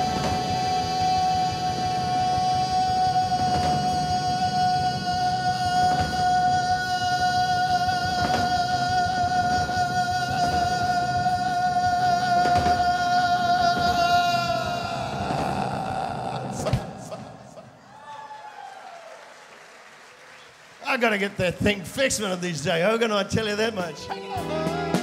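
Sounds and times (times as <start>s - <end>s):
band playing: 0.0s - 15.7s, 23.8s - 25.0s
man singing a long high note: 0.0s - 17.8s, 23.7s - 25.0s.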